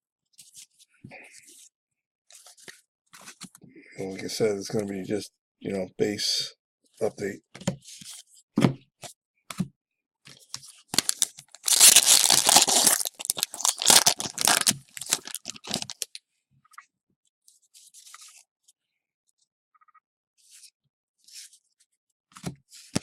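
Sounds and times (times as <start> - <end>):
card pack wrapper crackling: 10.9 - 16.2
wrapper ripping and crinkling: 10.9 - 16.2.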